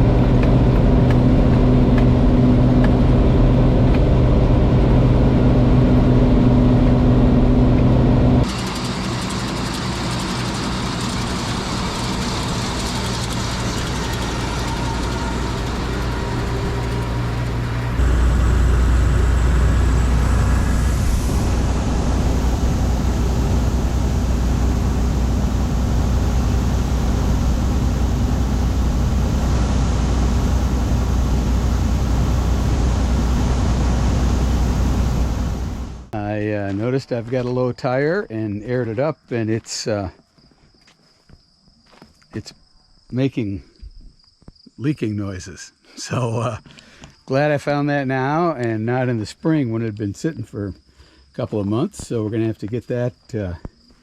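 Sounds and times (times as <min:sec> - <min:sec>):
combine harvester running: 0:00.0 - 0:36.8.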